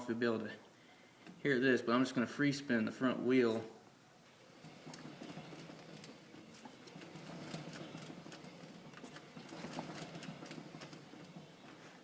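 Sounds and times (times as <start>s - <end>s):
rhythmic clunking and clicking: 4.3s - 12.0s
wheel free-spinning: 4.3s - 12.0s.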